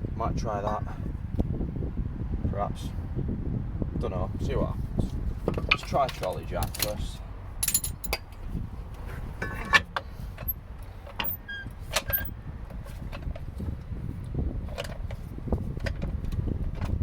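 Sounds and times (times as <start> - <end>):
low handling rumble: 1.2 - 17.0
metallic clanks and clicks: 5.5 - 7.0, 7.6 - 8.3.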